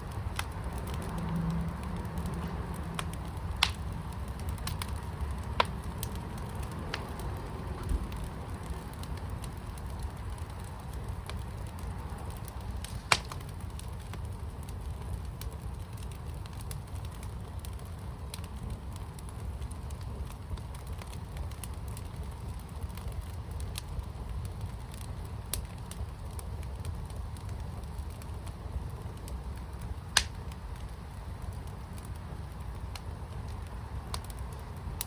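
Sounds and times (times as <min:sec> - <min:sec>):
steady low rumble: 0:00.0 - 0:23.1
wood fire crackling: 0:00.0 - 0:35.0
sharp pops: 0:12.9 - 0:13.4.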